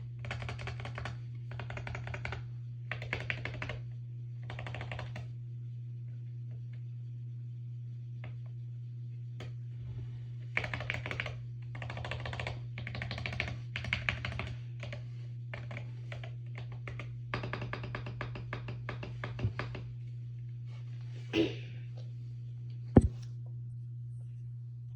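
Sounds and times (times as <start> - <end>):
steady low hum: 0.0 - 24.9
mechanical keyboard typing: 0.2 - 3.8, 4.4 - 5.3, 10.6 - 19.3.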